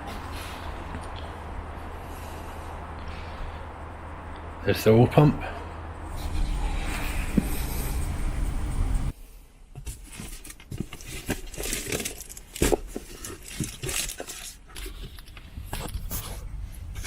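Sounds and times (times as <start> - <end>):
car engine idling: 5.4 - 9.1.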